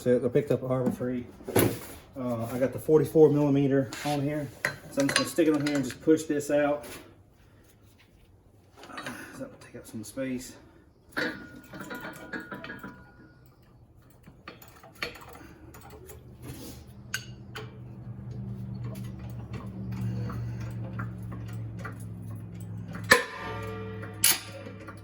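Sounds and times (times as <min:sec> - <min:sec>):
low steady hum: 0:07.3 - 0:25.0
metal clinks and taps: 0:17.0 - 0:25.0.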